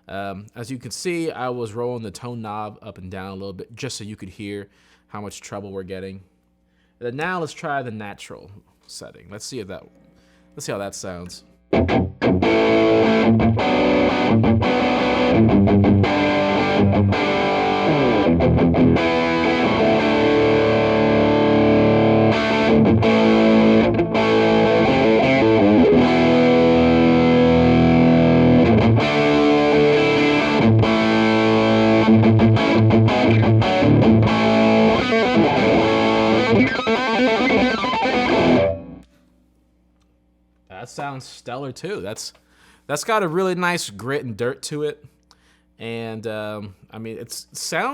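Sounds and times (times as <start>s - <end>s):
distorted electric guitar: 11.7s - 39.1s.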